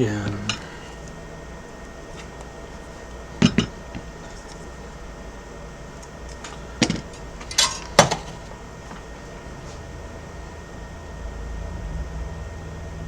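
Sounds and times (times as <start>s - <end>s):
metal hand tools clinking: 0.0s - 1.2s, 2.0s - 5.0s, 6.0s - 9.1s
tool scraping: 0.0s - 5.2s, 5.8s - 9.9s.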